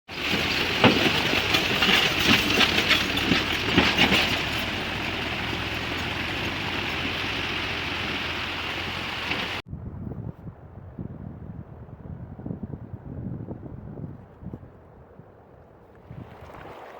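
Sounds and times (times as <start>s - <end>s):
river rushing over stones: 0.1s - 9.6s.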